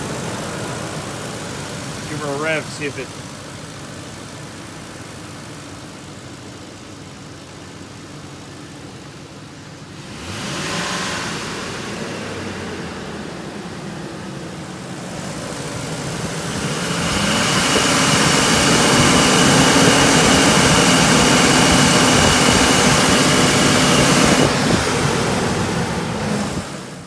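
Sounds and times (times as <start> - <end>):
engine idling and revving: 0.0 - 27.0.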